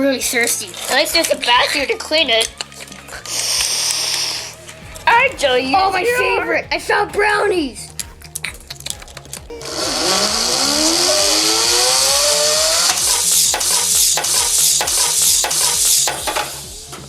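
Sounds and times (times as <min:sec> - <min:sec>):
music beat: 0:00.0 - 0:17.0
rising whistling tone: 0:09.6 - 0:17.0.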